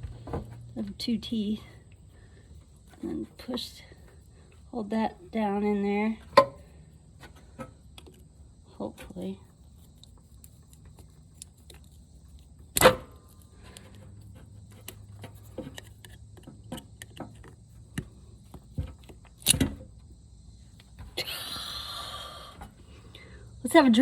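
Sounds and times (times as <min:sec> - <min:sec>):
hiss: 0:21.2 - 0:22.7.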